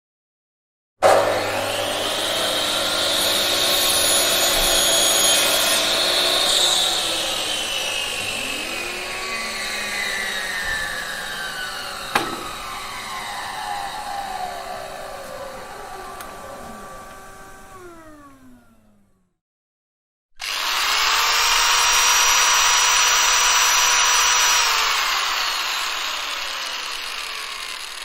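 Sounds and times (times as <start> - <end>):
angle grinder whining: 1.0 - 19.2, 20.4 - 28.0.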